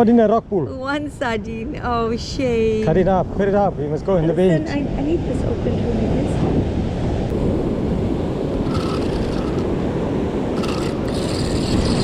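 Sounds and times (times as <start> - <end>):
wind buffeting microphone: 0.9 - 12.0
surf washing on rocks: 7.3 - 12.0.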